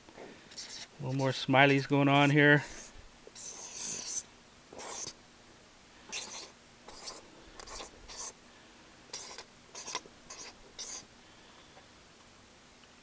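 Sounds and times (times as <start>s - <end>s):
pen scribbling: 0.5s - 1.3s, 2.6s - 4.2s, 4.8s - 5.2s, 6.1s - 8.4s, 9.1s - 11.1s.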